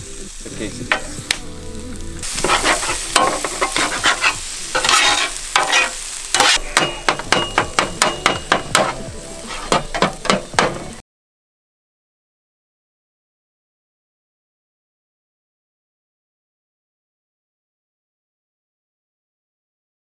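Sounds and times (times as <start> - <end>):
food sizzling in a pan: 0.0 - 11.0
utensil scraping a pan: 2.2 - 11.0.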